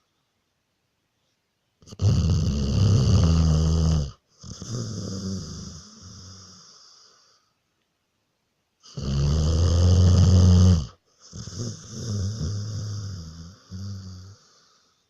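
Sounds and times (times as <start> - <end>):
loud slow snoring: 1.8 - 7.1, 8.9 - 14.8.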